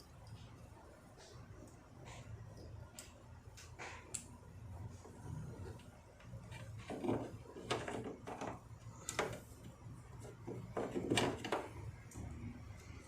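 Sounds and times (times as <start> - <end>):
plastic and rubber clicks and knocks: 10.2 - 11.8.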